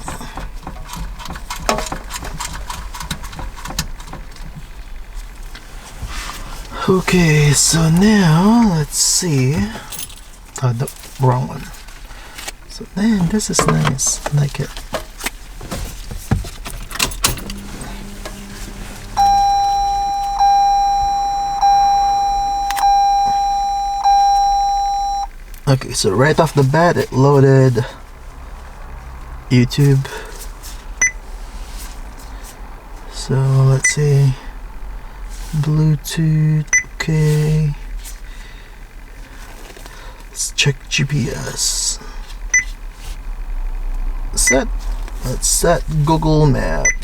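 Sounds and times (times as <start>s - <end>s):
car warning chime dings: 17.2s - 26.2s, 33.2s - 34.4s, 46.3s - 47.0s.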